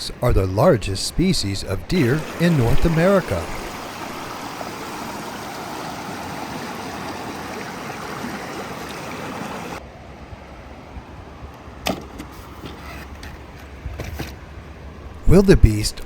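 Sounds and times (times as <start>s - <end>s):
running water rushing: 0.0s - 9.8s, 15.2s - 16.0s.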